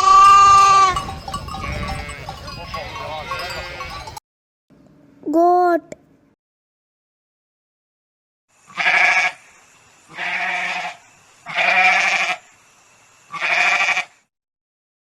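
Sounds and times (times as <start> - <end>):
goat bleating: 0.0 - 1.0, 1.6 - 2.5, 3.2 - 4.2, 8.7 - 9.4, 10.1 - 12.4, 13.3 - 14.2.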